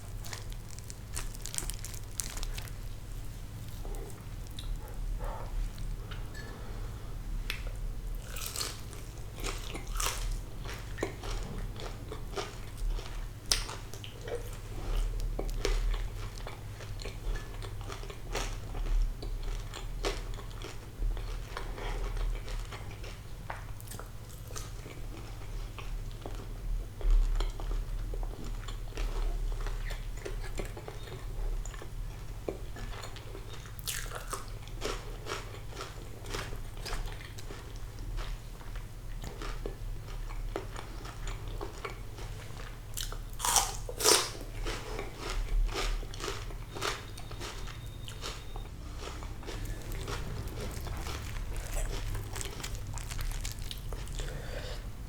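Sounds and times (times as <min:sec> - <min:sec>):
crunchy biting and chewing: 0:00.0 - 0:05.0, 0:08.2 - 0:18.9, 0:33.5 - 0:38.4, 0:43.0 - 0:54.6
steady low hum: 0:00.0 - 0:24.4, 0:37.2 - 0:55.0.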